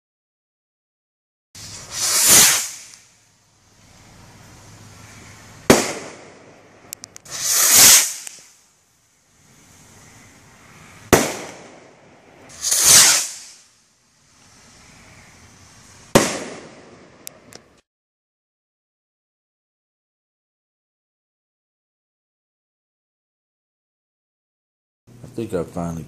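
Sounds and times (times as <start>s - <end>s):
firework bangs: 1.6s - 3.2s, 3.9s - 8.6s, 11.0s - 13.7s, 16.0s - 17.5s
small firework cracks: 1.6s - 3.2s, 5.2s - 8.7s, 11.1s - 13.8s, 16.1s - 17.7s
firework rushing hiss: 1.6s - 17.6s.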